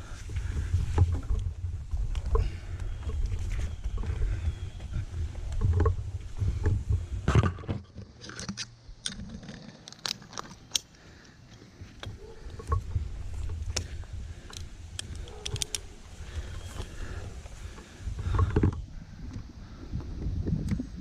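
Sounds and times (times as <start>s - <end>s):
low rumbling wind noise: 0.0s - 7.9s, 11.1s - 21.0s
metal climbing hardware clinking: 13.7s - 15.9s.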